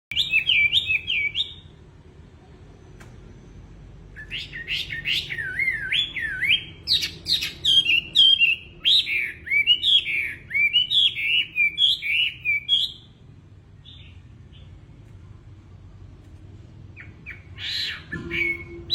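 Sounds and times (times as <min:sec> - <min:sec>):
songbird whistling: 0:00.1 - 0:01.7, 0:04.1 - 0:13.2, 0:17.0 - 0:18.9.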